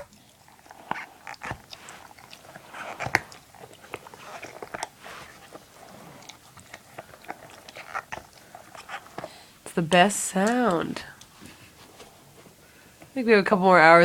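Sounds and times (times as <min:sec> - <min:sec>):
dog chewing a squeaky toy: 0:00.0 - 0:09.2.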